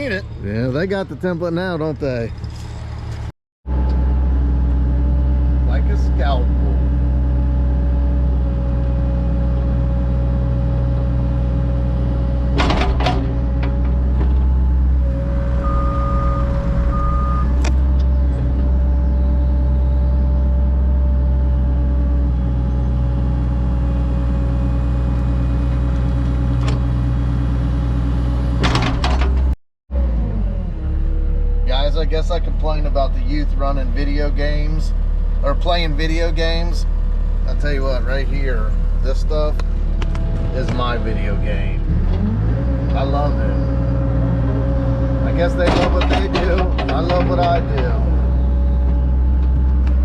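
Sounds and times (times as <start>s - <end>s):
excavator diesel engine: 0.0s - 50.0s
hydraulic whine: 3.7s - 50.0s
short electronic beeps: 15.6s - 17.6s.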